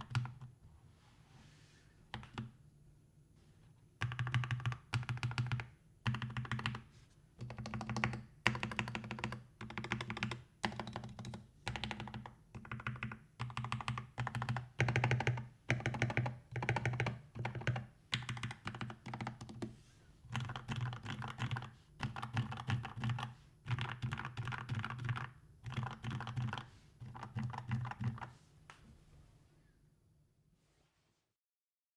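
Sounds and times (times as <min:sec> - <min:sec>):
mechanical keyboard typing: 0:00.0 - 0:00.5, 0:04.0 - 0:06.8, 0:07.4 - 0:19.7, 0:20.3 - 0:28.3.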